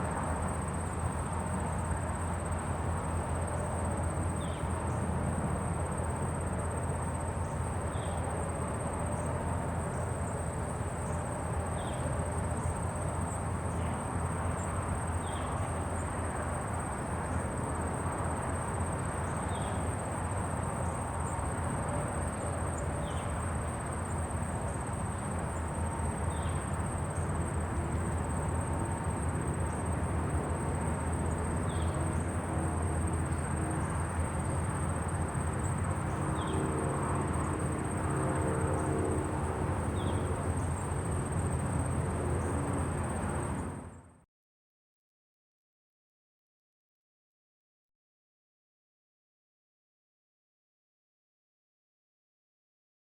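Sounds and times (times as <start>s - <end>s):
insects droning: 0.0s - 44.0s.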